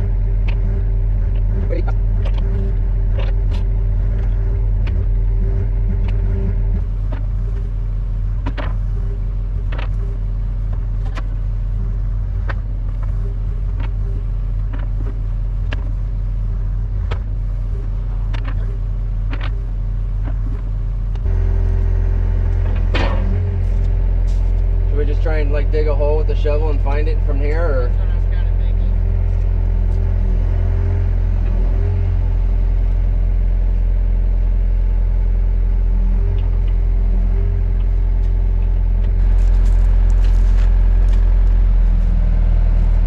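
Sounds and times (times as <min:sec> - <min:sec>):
heavy diesel engine running: 0:00.0 - 0:43.0
sharp clicks and knocks: 0:08.4 - 0:08.8, 0:14.6 - 0:16.0, 0:17.0 - 0:17.4, 0:18.3 - 0:21.3.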